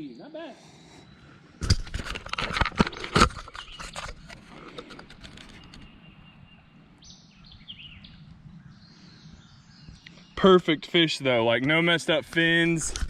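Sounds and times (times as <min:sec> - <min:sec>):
sharp knocks and clatter: 0:01.6 - 0:05.9
bird chirps: 0:03.4 - 0:04.4, 0:05.4 - 0:11.4.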